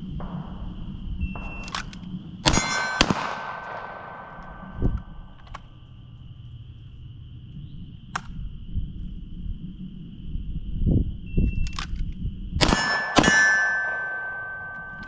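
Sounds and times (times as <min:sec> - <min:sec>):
pistol shots echoing: 0:00.2 - 0:05.8, 0:12.6 - 0:15.0.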